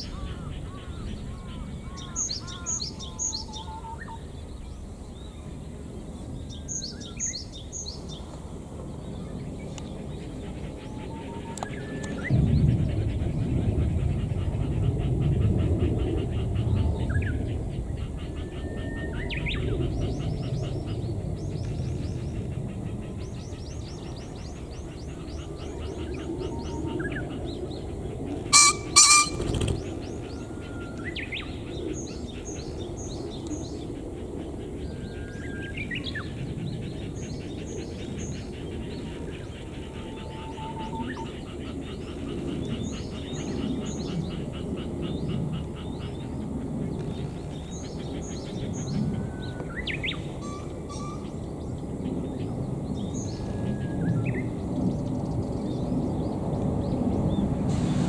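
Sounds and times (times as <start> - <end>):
pheasant two-note crow: 28.6 - 29.5
small birds chirping: 28.6 - 30.2
wing-beating whirr: 57.6 - 58.0.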